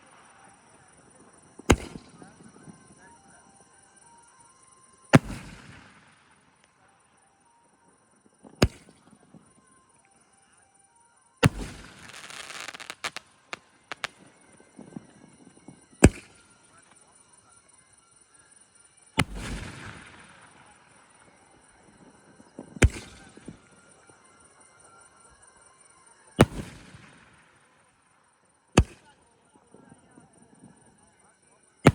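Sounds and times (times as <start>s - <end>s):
firework bangs: 5.2s - 6.0s, 11.4s - 13.2s, 13.9s - 14.2s, 26.4s - 27.0s
firework hissing crackle: 11.5s - 14.2s.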